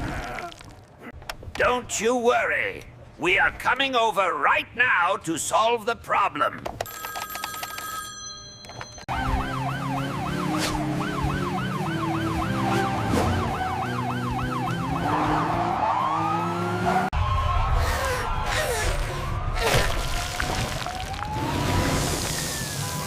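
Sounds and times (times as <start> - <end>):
police siren yelping: 9.1 - 19.6, 20.8 - 23.0.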